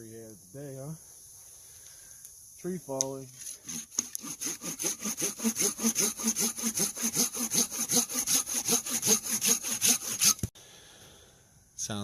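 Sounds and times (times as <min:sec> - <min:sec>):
hand saw cutting wood: 0:03.4 - 0:10.5.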